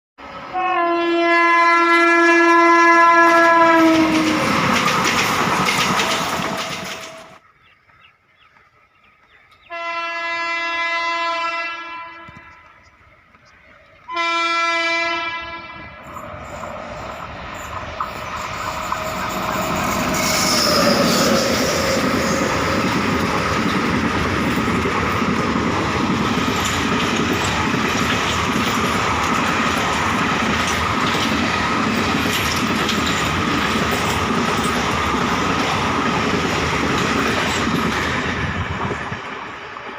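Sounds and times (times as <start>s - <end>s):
train passing at high speed: 0.2s - 39.9s
locomotive horn blasts: 0.5s - 4.4s, 9.7s - 12.8s, 14.1s - 16.0s
wheels clacking over rail joints: 3.2s - 9.7s, 16.0s - 39.9s.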